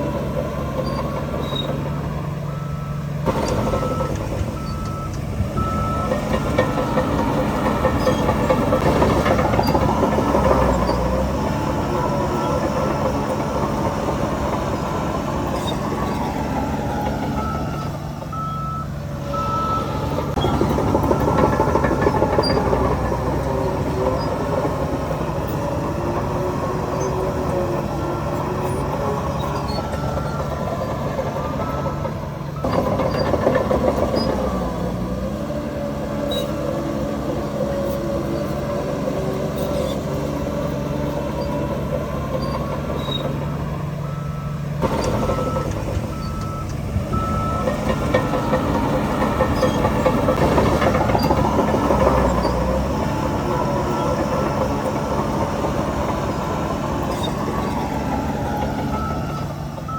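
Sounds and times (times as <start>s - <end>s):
diesel machinery running: 0.0s - 59.9s
reversing alarm beeping: 2.5s - 23.9s, 26.9s - 34.9s, 41.3s - 55.0s, 55.7s - 59.9s.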